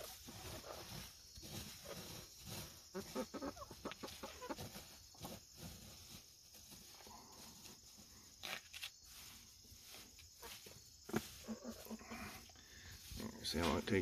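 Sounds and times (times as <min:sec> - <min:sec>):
faint chicken cluck: 0:00.0 - 0:06.0, 0:09.8 - 0:13.8
chickens pecking and scratching: 0:00.0 - 0:14.0.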